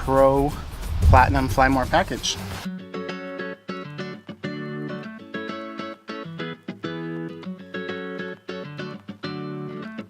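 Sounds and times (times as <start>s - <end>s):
upbeat plucked guitar instrumental: 0.0s - 10.0s.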